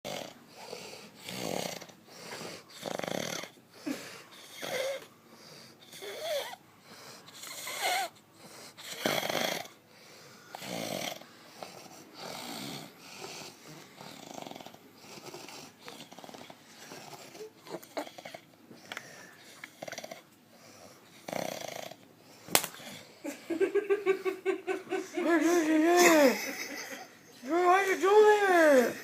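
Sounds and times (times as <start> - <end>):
man snoring heavily: 0.1 - 5.0, 8.8 - 9.8, 10.5 - 17.2, 19.8 - 20.2, 21.2 - 22.0.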